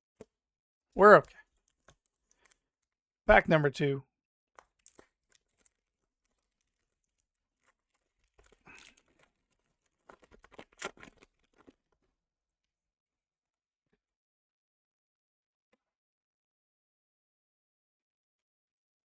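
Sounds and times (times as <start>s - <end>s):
foil wrapper tearing and crinkling: 1.6s - 2.8s, 4.6s - 12.1s.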